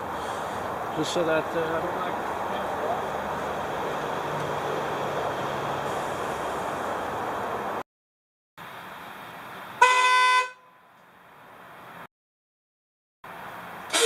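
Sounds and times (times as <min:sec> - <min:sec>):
air horn blast: 0:09.8 - 0:10.6.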